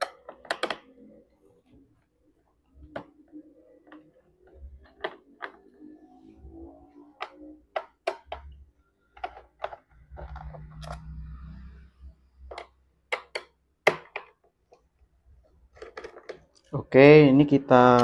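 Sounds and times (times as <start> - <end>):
screwdriver clicking on plastic case: 15.8 - 16.4.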